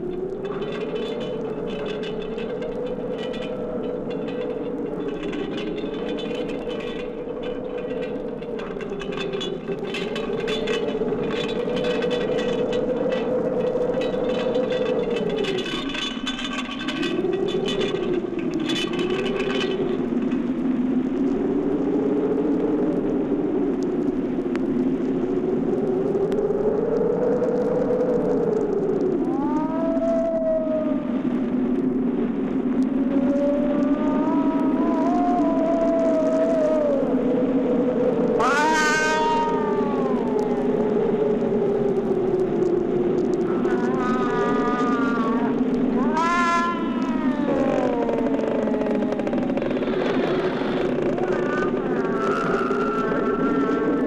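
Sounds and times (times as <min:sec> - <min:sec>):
wavering drone: 0:00.0 - 0:25.0, 0:25.8 - 0:54.0
scraping crackles: 0:00.0 - 0:54.0
wavering whistle-like tone: 0:38.4 - 0:42.7, 0:43.3 - 0:54.0.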